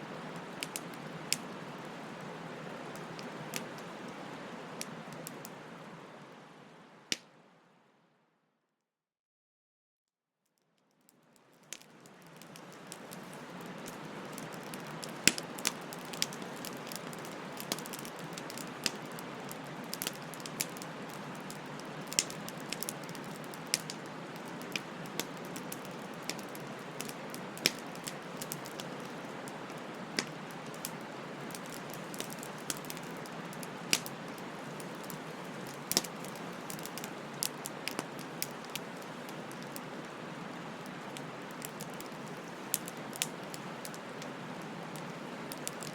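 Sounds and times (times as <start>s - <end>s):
hiss of bonfire flames: 0.0s - 7.2s, 11.6s - 45.9s
wood popping and crackling: 11.7s - 40.0s.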